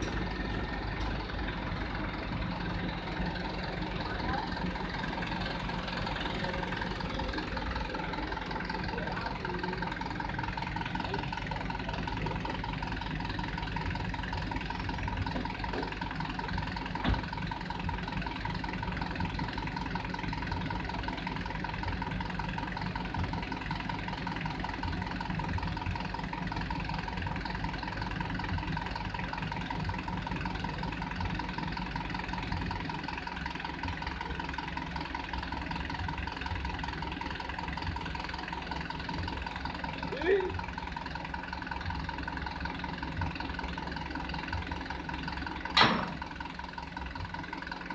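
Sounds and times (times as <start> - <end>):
diesel engine idling: 0.0 - 47.9.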